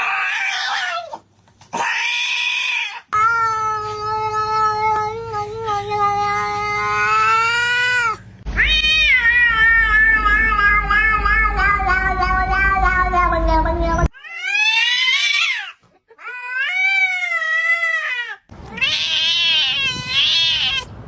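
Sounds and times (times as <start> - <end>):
cat yowling: 0.0 - 1.2, 1.8 - 20.9.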